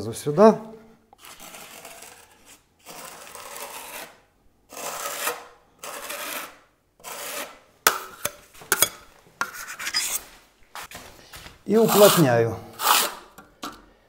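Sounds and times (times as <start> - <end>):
steel spatula scraping plaster: 1.2 - 10.4, 11.7 - 13.7.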